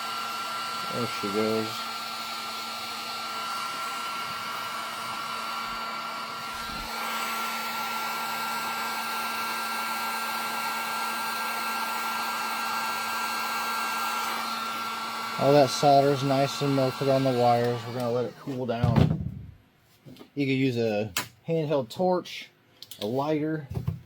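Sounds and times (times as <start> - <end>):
heat gun blowing: 0.0 - 18.6.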